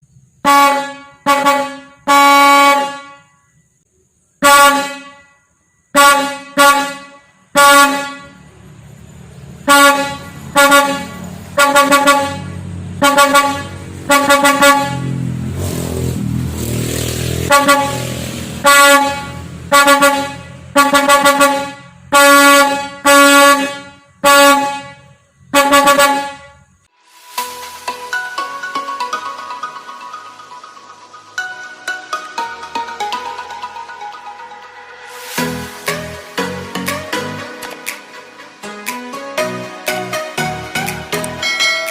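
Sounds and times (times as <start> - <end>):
truck horn blasts: 0.4 - 3.8, 4.4 - 8.8, 9.5 - 26.8
low engine rumble: 8.2 - 26.9.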